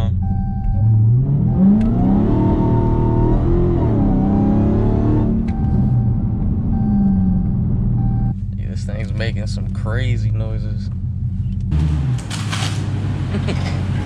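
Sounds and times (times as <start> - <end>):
car engine revving hard: 1.0 - 5.6, 11.7 - 12.4.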